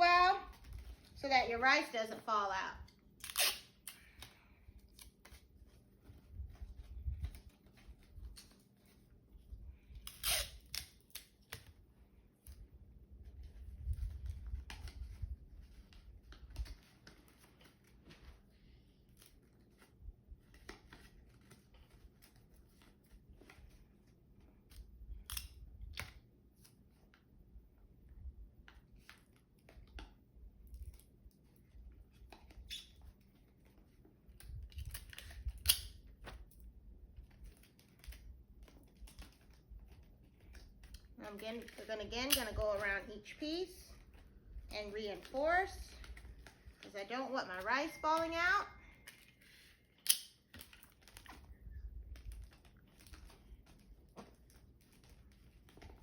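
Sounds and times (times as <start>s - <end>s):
paper snips and crinkles: 2.8s - 27.2s, 28.7s - 43.2s.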